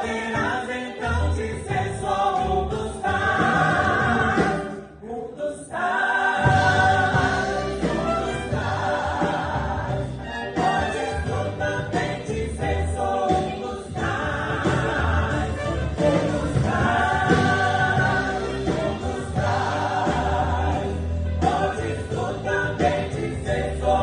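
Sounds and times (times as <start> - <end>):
choir singing a hymn: 0.0 - 24.0
orchestra playing: 6.5 - 12.1, 15.3 - 21.4.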